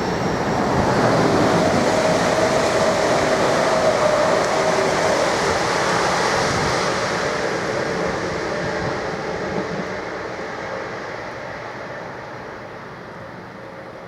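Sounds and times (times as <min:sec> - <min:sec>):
freight train rumbling and rattling: 0:00.0 - 0:14.0.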